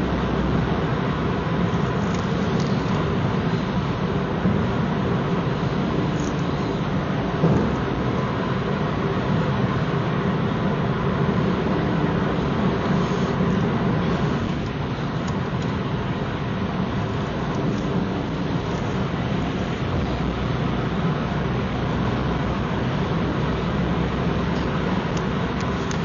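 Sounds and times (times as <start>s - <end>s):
car engine drone: 0.0s - 26.0s
deep hum: 7.1s - 8.2s.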